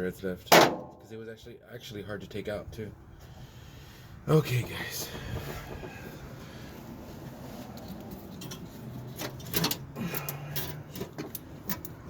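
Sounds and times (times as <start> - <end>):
metal tools clinking: 7.8 - 12.0.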